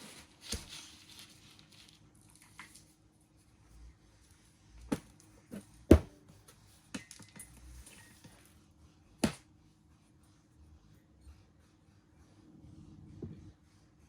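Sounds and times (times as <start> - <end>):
plant pot knocks and clatters: 4.9 - 6.1.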